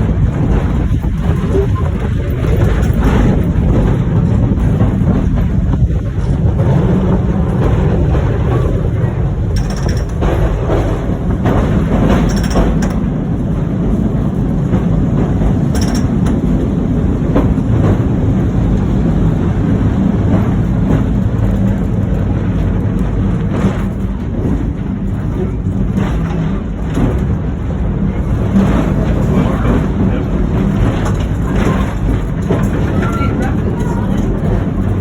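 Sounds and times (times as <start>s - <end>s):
tram rumbling along track: 0.0s - 35.0s
sharp clicks and knocks: 9.5s - 13.4s, 14.6s - 19.2s.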